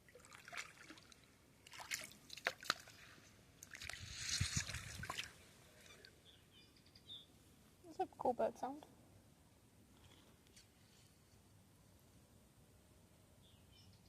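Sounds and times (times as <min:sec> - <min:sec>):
water sloshing and splashing: 0:00.0 - 0:06.2.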